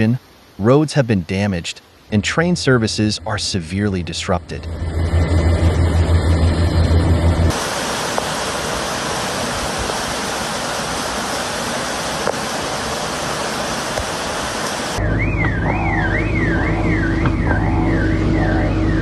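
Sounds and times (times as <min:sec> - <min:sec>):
floodwater rushing: 0:01.9 - 0:19.0
low hum: 0:02.0 - 0:09.9, 0:14.5 - 0:19.0
siren wailing: 0:04.5 - 0:07.6, 0:14.9 - 0:19.0.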